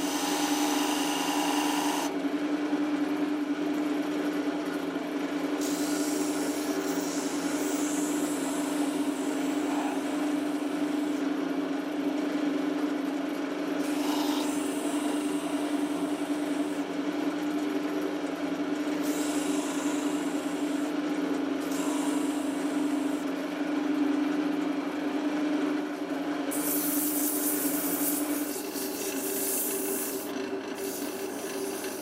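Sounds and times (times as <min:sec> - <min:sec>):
power tool humming: 0:00.0 - 0:02.1, 0:05.6 - 0:11.2, 0:13.8 - 0:16.8, 0:19.0 - 0:20.9, 0:26.6 - 0:32.0.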